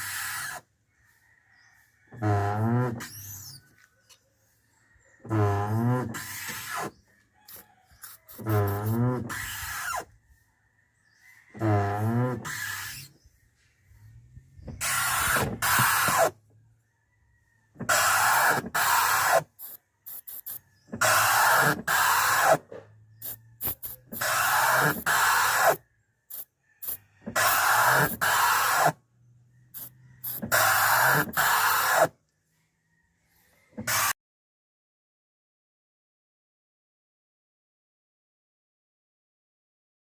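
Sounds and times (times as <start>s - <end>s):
windscreen wipers squeaking: 2.2s - 3.7s, 5.2s - 10.1s, 11.5s - 13.3s, 14.6s - 16.5s, 17.7s - 29.0s, 29.7s - 32.1s.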